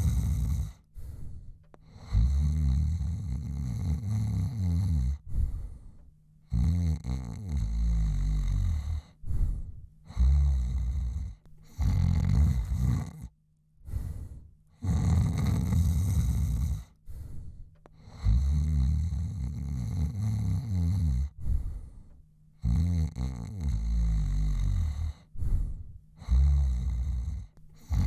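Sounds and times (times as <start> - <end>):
man snoring: 0.0 - 1.1, 1.8 - 5.8, 6.4 - 22.0, 22.6 - 28.0
breaths: 0.0 - 2.4, 5.1 - 6.2, 8.0 - 12.8, 13.8 - 15.1, 15.8 - 19.3, 21.2 - 22.4, 24.2 - 28.0.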